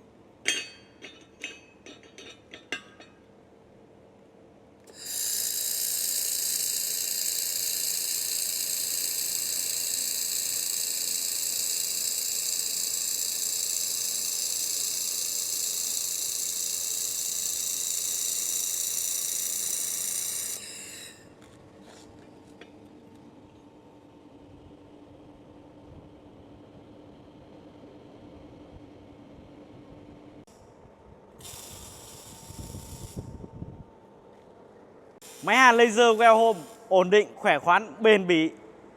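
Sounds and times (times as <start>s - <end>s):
laser welder hissing: 4.9s - 21.2s, 31.4s - 33.2s, 35.2s - 36.9s.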